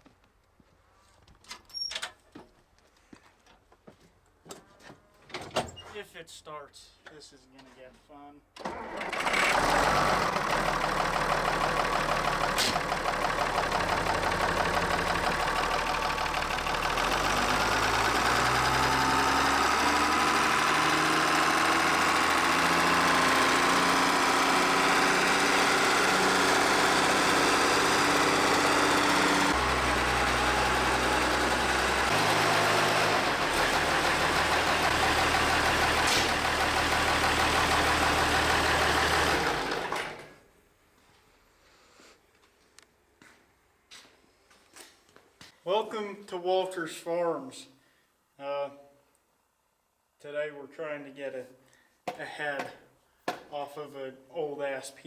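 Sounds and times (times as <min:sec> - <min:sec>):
wheel loader engine running: 0:09.0 - 0:40.3.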